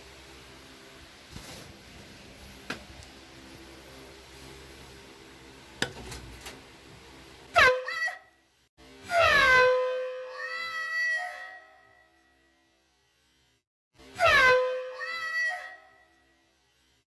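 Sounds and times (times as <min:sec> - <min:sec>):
air horn blast: 0:07.5 - 0:08.2, 0:09.1 - 0:11.9, 0:14.2 - 0:16.1.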